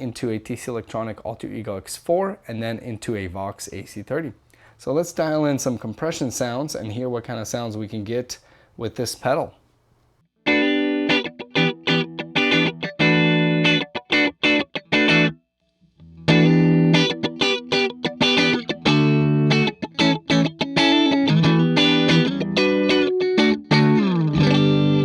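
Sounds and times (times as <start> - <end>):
electric guitar chords and notes: 10.4 - 25.0.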